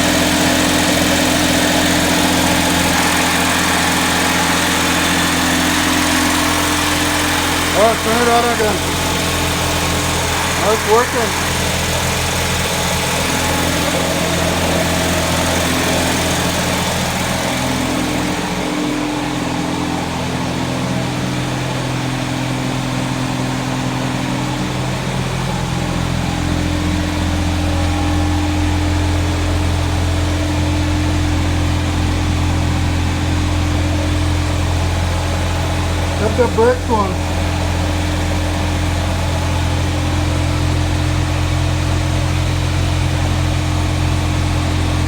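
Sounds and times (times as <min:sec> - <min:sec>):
car engine idling with misfire: 0:00.0 - 0:45.0.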